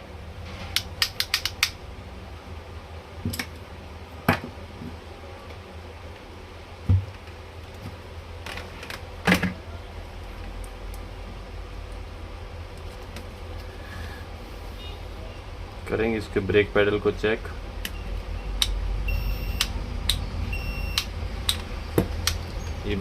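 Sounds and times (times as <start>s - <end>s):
steady low hum: 0.0s - 23.0s
dull thump: 6.9s - 7.1s.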